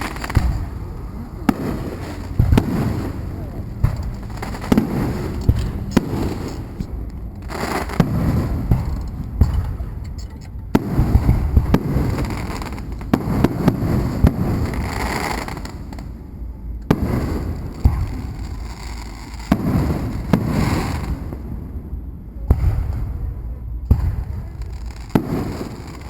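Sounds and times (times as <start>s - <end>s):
fireworks bangs and pops: 0.0s - 16.2s, 16.8s - 26.0s
rumble and crackle of shells bursting: 0.0s - 21.6s, 22.5s - 26.0s.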